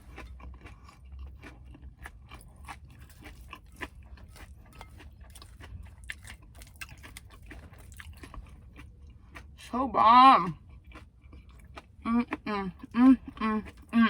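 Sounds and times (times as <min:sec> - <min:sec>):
person chewing crunchy food: 0:00.0 - 0:14.0.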